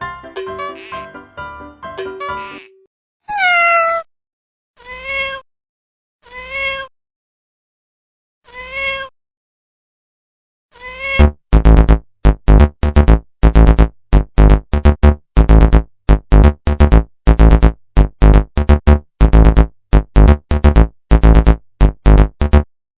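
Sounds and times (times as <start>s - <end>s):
choppy synthesizer music: 0.0s - 1.2s, 1.8s - 2.7s, 11.2s - 22.7s
cat meowing: 3.3s - 4.1s, 4.8s - 5.4s, 6.2s - 6.9s, 8.4s - 9.1s, 10.7s - 11.2s.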